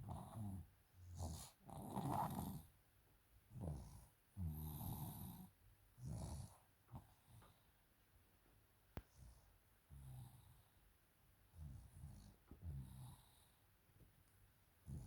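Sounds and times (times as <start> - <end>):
child snoring: 0.0 - 2.7, 3.6 - 6.6.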